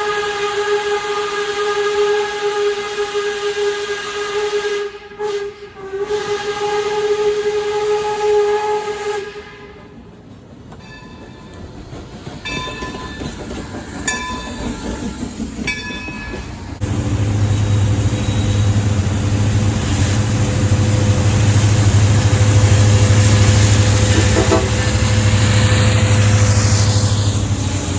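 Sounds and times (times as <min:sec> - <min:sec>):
train horn chord: 0:00.0 - 0:09.8, 0:22.0 - 0:27.4
locomotive bell ringing: 0:10.8 - 0:11.6, 0:12.4 - 0:16.8
locomotive engine droning: 0:11.2 - 0:27.9.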